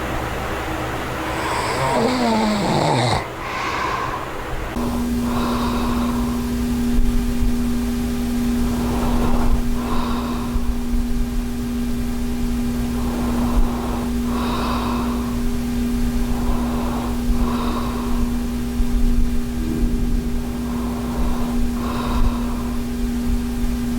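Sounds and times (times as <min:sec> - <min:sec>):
machine hum: 0:00.0 - 0:23.9
person breathing softly: 0:03.4 - 0:06.7, 0:08.6 - 0:11.0, 0:12.8 - 0:15.6, 0:16.2 - 0:18.7, 0:19.5 - 0:23.0.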